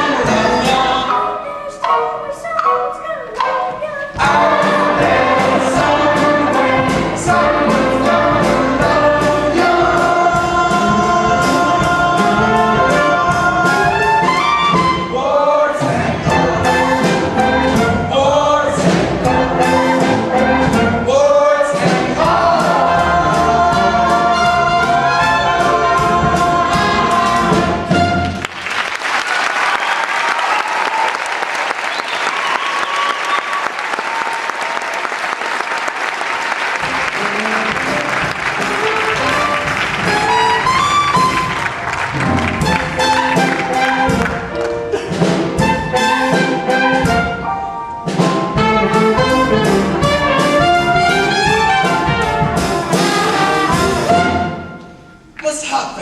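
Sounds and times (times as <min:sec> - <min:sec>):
band with brass and drums: 0:00.0 - 0:02.0, 0:02.6 - 0:30.5, 0:35.7 - 0:56.0
audience applause: 0:28.3 - 0:44.8.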